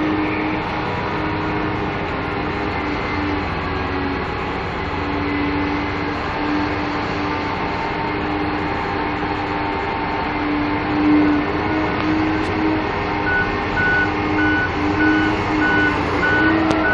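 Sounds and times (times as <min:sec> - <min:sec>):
heavy diesel engines running: 0:00.0 - 0:16.9
reversing alarm beeping: 0:13.2 - 0:16.9.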